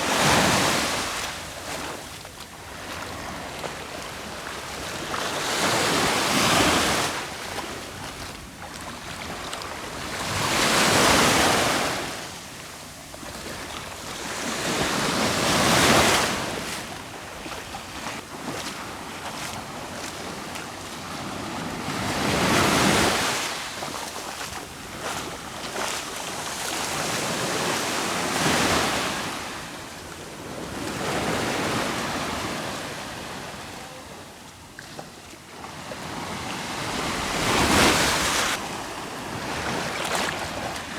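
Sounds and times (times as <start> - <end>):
waves breaking on shore: 0.0 - 40.9.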